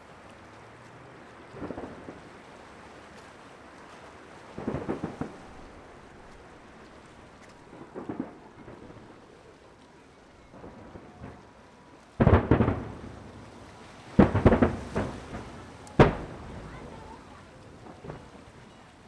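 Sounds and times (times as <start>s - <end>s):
firework shells bursting: 12.2s - 13.5s, 14.1s - 18.6s.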